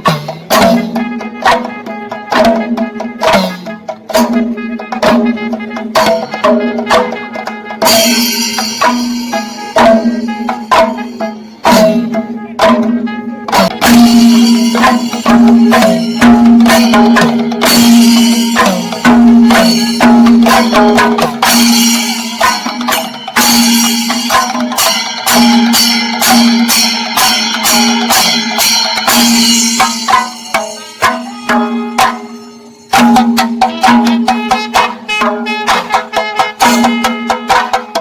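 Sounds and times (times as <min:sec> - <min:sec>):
rapid drum ensemble: 0:00.0 - 0:38.0
bright cymbals: 0:07.9 - 0:12.2, 0:13.8 - 0:34.2.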